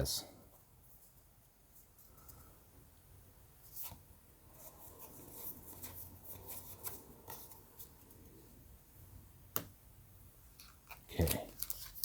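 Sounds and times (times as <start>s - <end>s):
trading cards rustling: 10.6s - 12.0s.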